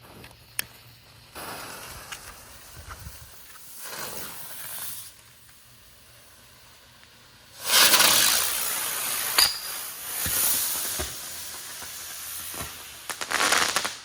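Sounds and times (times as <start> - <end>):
firework fuse hissing: 0.0 - 14.0.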